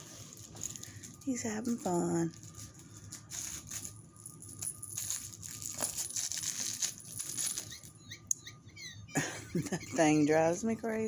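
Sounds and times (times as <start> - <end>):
cat toys rattling on floor: 0.1 - 8.1
cat chirping: 7.6 - 10.6.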